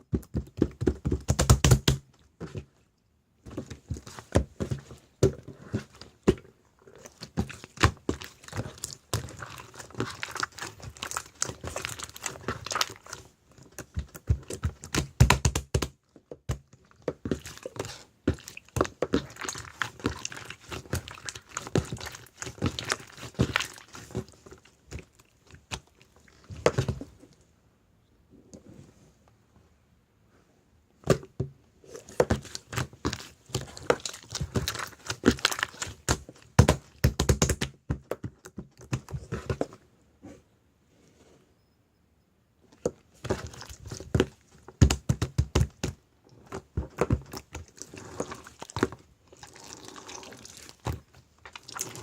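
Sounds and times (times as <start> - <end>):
slime squished by hand: 3.5 - 27.2, 31.8 - 37.8, 43.1 - 52.0.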